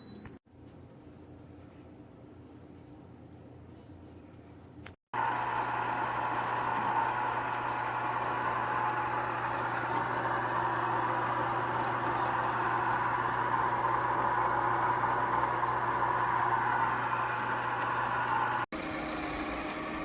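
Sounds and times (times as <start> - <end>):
ice cream maker humming: 5.2 - 20.0.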